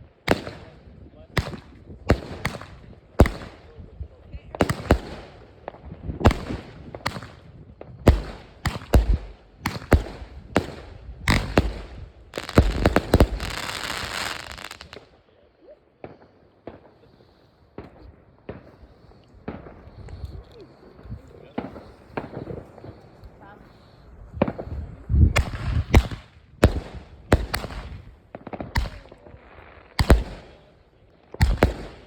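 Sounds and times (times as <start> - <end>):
fireworks banging and crackling: 0.0 - 15.2, 16.0 - 23.7, 24.3 - 32.0.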